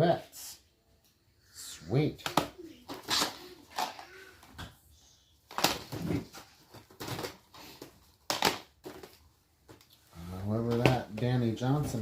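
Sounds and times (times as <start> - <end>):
plastic cases clattering: 5.5 - 9.8.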